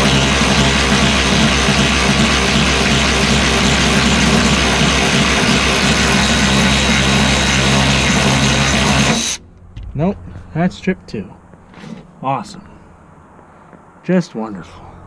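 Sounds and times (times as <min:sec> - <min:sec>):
power tool motor humming: 0:00.0 - 0:09.4.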